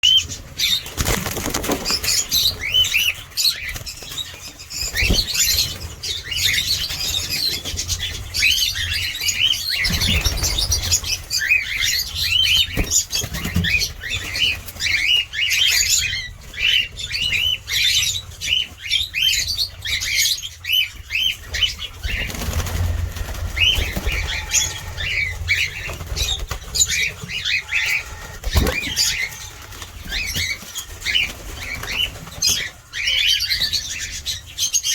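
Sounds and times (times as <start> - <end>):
wings flapping: 0.7 - 6.0, 9.8 - 14.9, 21.5 - 32.8
cockatiels chirping: 1.6 - 34.9.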